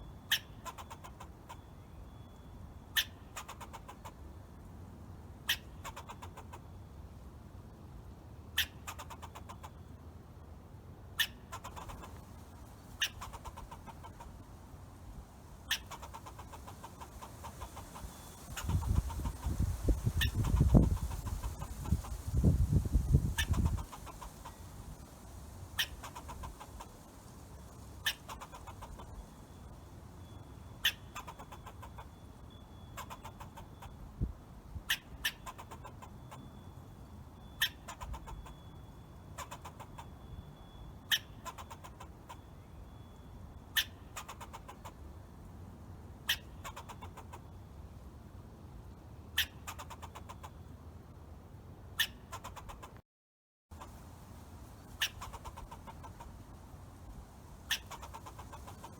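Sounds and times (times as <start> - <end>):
squirrel chips and chatter: 0.3 - 1.6, 3.0 - 4.1, 5.5 - 6.6, 8.6 - 9.6, 11.2 - 14.4, 15.2 - 29.8, 30.8 - 32.1, 32.9 - 33.9, 41.1 - 42.4, 43.8 - 44.9, 49.4 - 50.4, 53.8 - 58.9.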